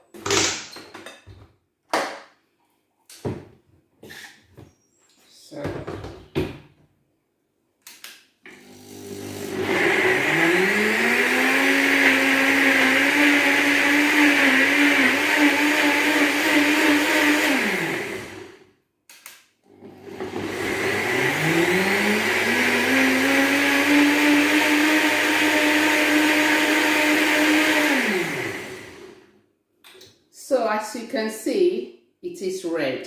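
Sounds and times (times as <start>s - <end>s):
kitchen blender motor: 8.5s - 18.6s, 19.7s - 29.2s.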